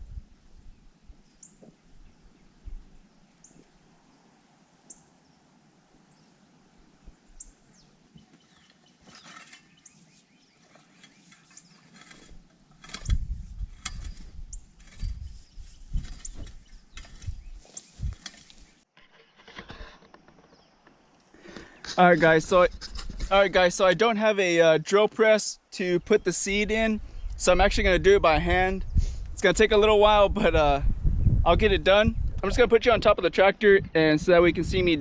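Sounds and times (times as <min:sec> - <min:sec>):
rake scraping through soil: 0:08.2 - 0:20.6, 0:22.0 - 0:23.6.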